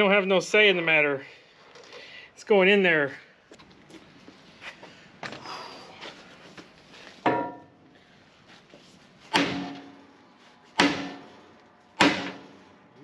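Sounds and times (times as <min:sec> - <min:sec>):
hammer blows on steel: 0:10.8 - 0:11.4.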